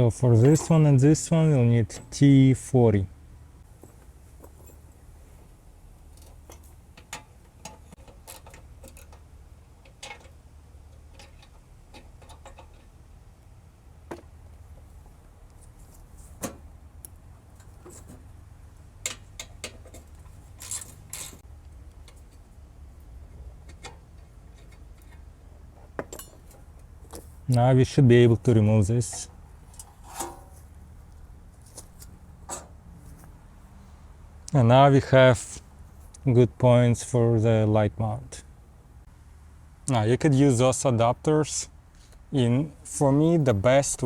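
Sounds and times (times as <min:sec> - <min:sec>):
low steady hum: 0:00.0 - 0:44.0.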